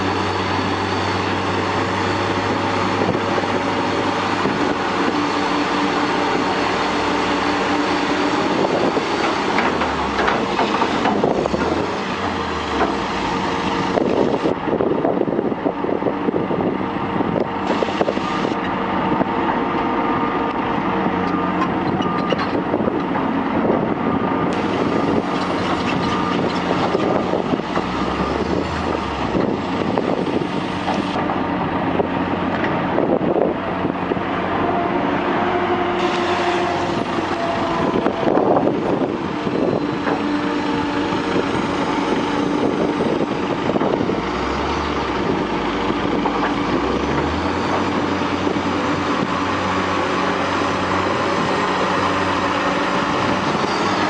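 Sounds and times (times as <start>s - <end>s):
diesel engine of heavy machinery: 0.0s - 54.0s
machinery knocks and clanks: 8.6s - 14.4s, 24.6s - 31.4s, 43.2s - 49.0s.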